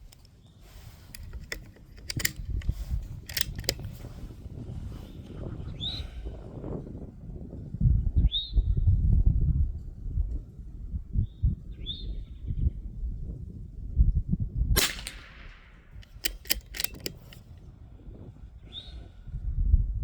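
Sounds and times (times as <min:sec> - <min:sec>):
quick run of sharp clicks: 0:00.0 - 0:04.1, 0:14.8 - 0:17.4
gunshot with echo: 0:14.8 - 0:15.9.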